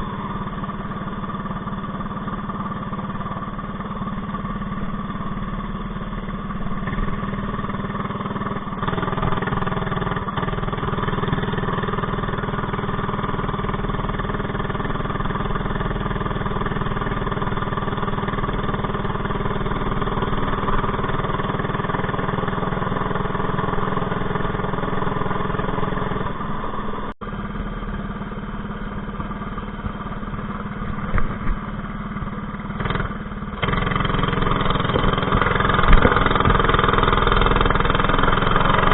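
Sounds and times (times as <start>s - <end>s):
small engine running steadily: 0.0s - 38.9s.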